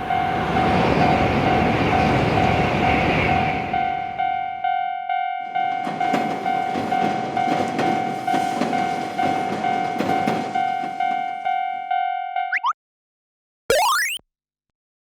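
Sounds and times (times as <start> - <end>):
railroad crossing bell ringing: 3.7 - 12.5
train wheels clattering over rails: 5.5 - 11.5.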